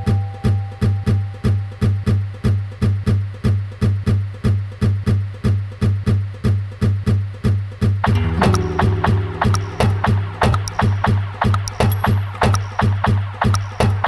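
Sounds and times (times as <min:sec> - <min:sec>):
electronic music beat: 0:08.0 - 0:14.0.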